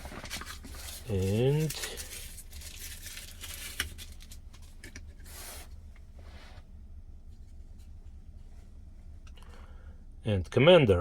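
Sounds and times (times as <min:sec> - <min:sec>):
packaging rustle: 0:00.0 - 0:04.9
steady low hum: 0:00.0 - 0:11.0.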